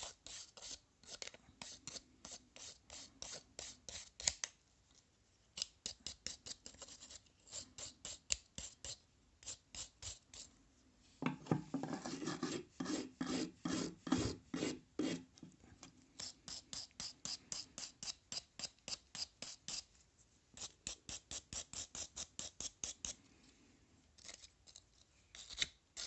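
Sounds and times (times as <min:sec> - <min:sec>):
hand scraping metal tool: 0:11.4 - 0:15.6.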